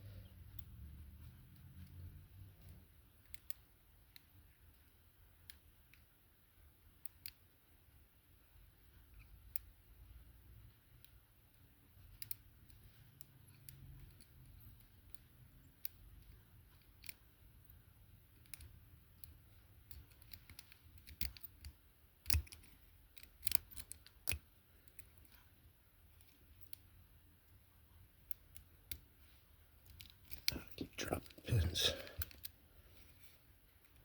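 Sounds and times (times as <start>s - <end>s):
lock pick clicking in padlock: 19.9s - 25.3s.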